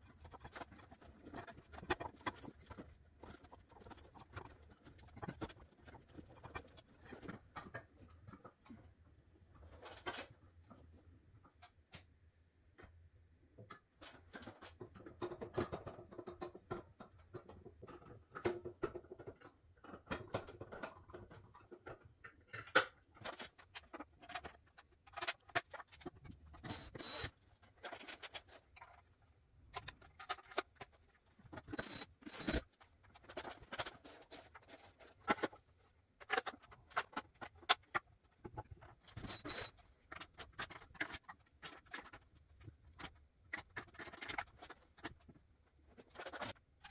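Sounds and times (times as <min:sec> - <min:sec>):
hardware and tools clicking: 0:13.7 - 0:46.9.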